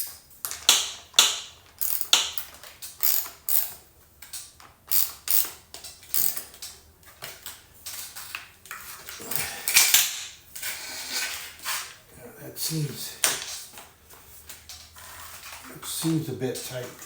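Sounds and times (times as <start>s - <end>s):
metallic clicking of chainsaw chain: 0.7s - 3.8s, 4.9s - 6.5s.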